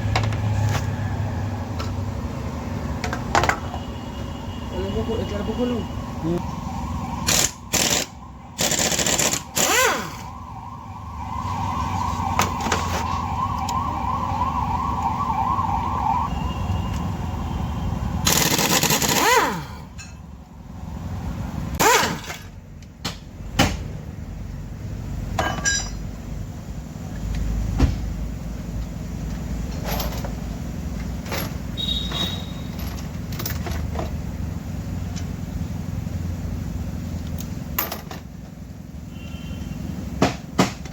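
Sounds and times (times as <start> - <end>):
warbling siren-like tone: 4.0 - 21.2.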